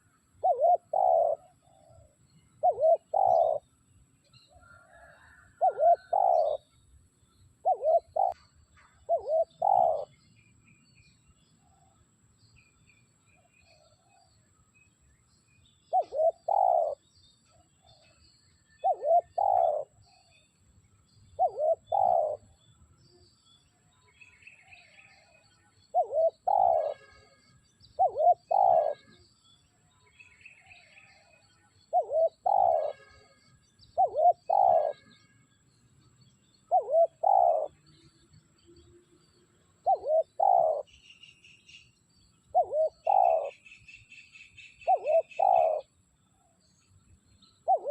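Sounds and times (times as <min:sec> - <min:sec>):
dove cooing: 0:00.0 - 0:03.6, 0:04.7 - 0:06.7, 0:07.6 - 0:08.4, 0:09.1 - 0:10.2, 0:15.9 - 0:17.0, 0:18.8 - 0:20.3, 0:21.4 - 0:22.5, 0:26.0 - 0:27.1, 0:28.0 - 0:29.2, 0:31.9 - 0:33.0, 0:34.0 - 0:35.0, 0:36.7 - 0:37.7, 0:39.8 - 0:40.9, 0:42.6 - 0:43.6, 0:44.8 - 0:45.9, 0:47.6 - 0:47.9
small birds chirping: 0:00.0 - 0:47.9.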